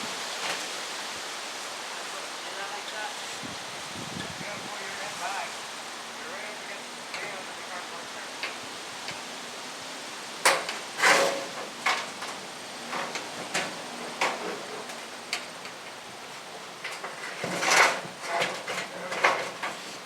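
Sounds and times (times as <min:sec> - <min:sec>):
metal panels clanking: 0:10.4 - 0:15.8, 0:16.7 - 0:19.9
metal panels scraping: 0:10.5 - 0:15.8, 0:16.7 - 0:20.0.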